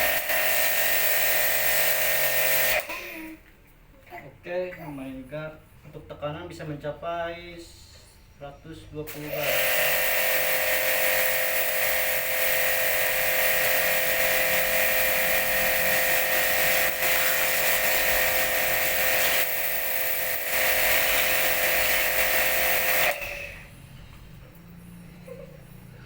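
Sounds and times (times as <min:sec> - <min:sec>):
pressure washer motor whining: 0:00.0 - 0:03.1, 0:09.1 - 0:26.0.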